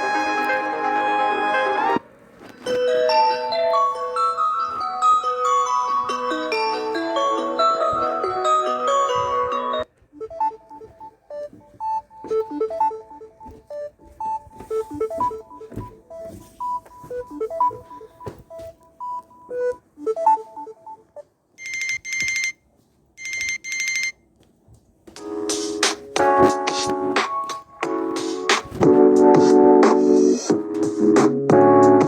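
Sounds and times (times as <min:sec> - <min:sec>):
trilling telephone bell ring: 0:21.6 - 0:22.6, 0:23.2 - 0:24.2.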